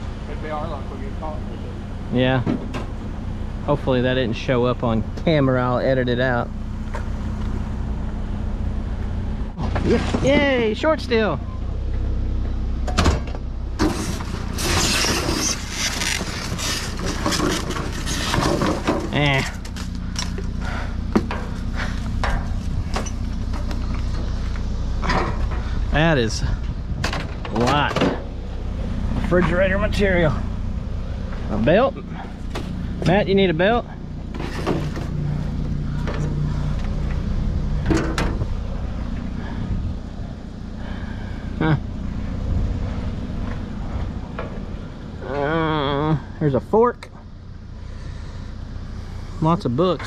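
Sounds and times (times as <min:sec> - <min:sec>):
low engine hum: 0:00.0 - 0:50.0
knocks and rustles: 0:12.9 - 0:25.7, 0:32.4 - 0:33.2, 0:34.3 - 0:39.3
items rustling and clattering: 0:13.8 - 0:20.6, 0:34.3 - 0:35.3.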